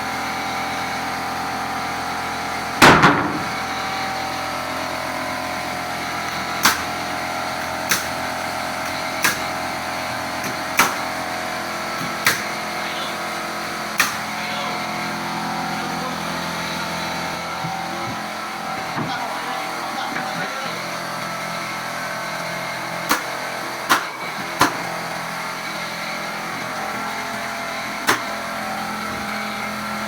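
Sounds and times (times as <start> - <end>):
machine hum: 0.0 - 30.0
nail gun shots: 2.8 - 3.6, 6.6 - 6.9, 7.9 - 8.2, 12.2 - 12.6, 14.0 - 14.2, 23.1 - 23.3, 23.9 - 24.8, 28.0 - 28.3.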